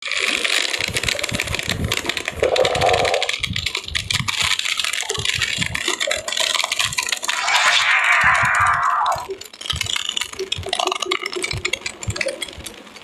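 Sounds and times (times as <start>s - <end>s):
rapid clicking and crackling: 0.0s - 8.0s, 8.7s - 13.0s
rushing sound: 7.2s - 9.4s
hiss: 7.3s - 9.3s.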